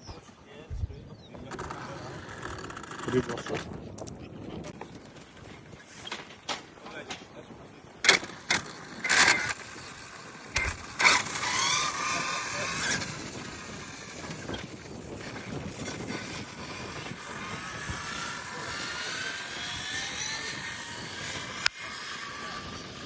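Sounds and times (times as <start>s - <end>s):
rc car motor whining: 1.4s - 4.2s, 7.9s - 23.0s.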